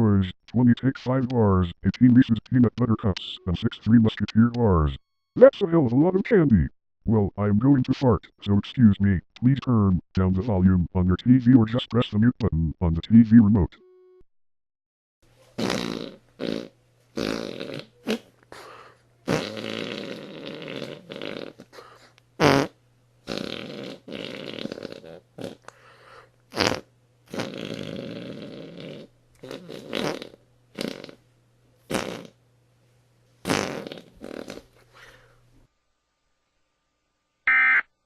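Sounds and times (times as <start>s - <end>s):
person blowing fake fart noises: 15.6s - 25.7s, 26.5s - 31.2s, 31.9s - 32.4s, 33.4s - 35.1s.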